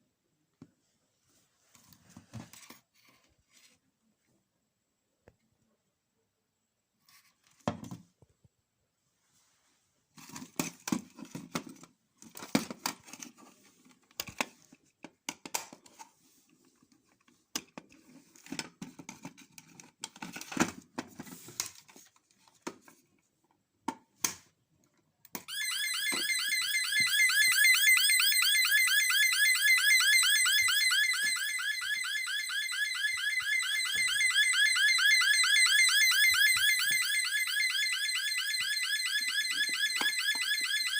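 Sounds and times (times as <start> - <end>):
fire alarm warbling tone: 25.5 - 40.9.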